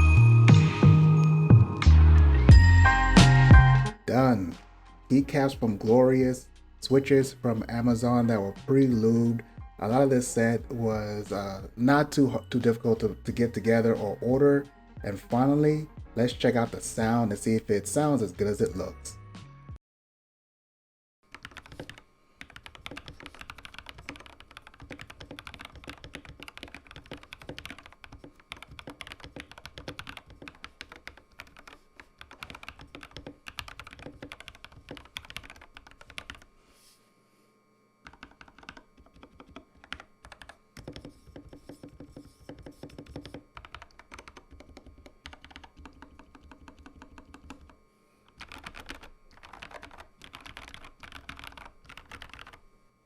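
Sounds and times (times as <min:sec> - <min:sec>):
mechanical keyboard typing: 0:21.3 - 0:36.5, 0:38.0 - 0:47.8, 0:48.4 - 0:52.6.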